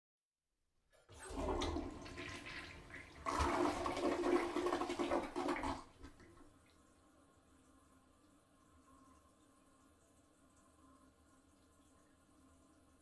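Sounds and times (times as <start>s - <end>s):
toilet flushing: 1.0s - 7.2s.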